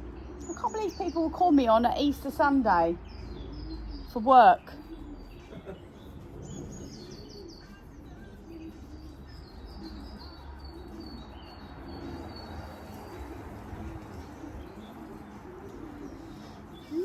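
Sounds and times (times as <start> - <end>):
small birds chirping: 0.0 - 17.0
pigeons cooing: 4.8 - 17.0.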